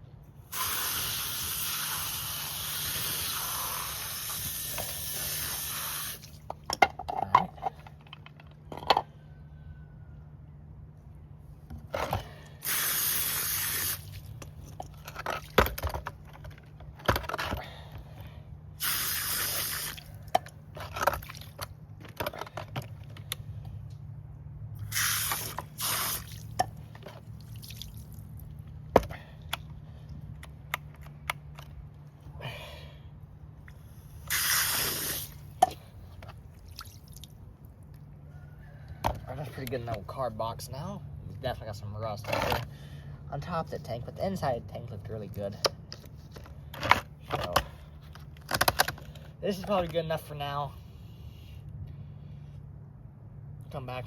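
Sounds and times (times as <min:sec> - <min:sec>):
liquid spraying from nozzle: 0:00.5 - 0:06.4, 0:12.6 - 0:14.3, 0:18.8 - 0:20.2, 0:24.8 - 0:26.6, 0:34.2 - 0:35.5.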